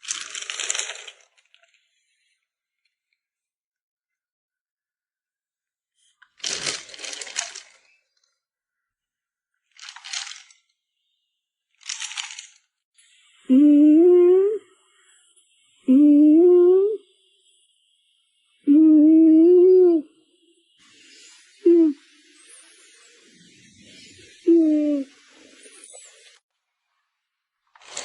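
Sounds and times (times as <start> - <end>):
person humming: 13.4 - 14.8, 15.8 - 17.0, 18.6 - 20.1, 21.6 - 22.0, 24.5 - 25.1
hissy noise bursts: 20.4 - 26.4.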